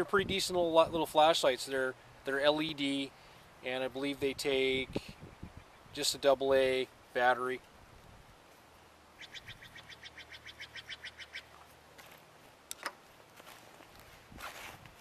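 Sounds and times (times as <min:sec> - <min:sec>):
bird trilling: 0:09.2 - 0:11.6.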